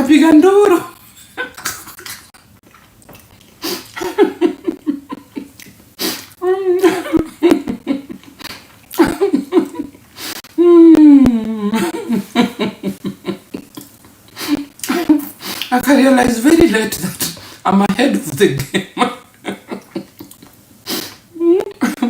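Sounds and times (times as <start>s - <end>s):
person laughing: 4.0s - 5.6s, 6.7s - 8.3s, 10.8s - 13.8s, 18.3s - 20.3s.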